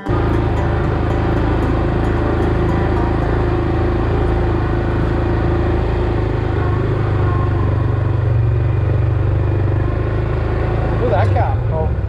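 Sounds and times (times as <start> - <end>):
vehicle engine droning: 0.0 - 12.0.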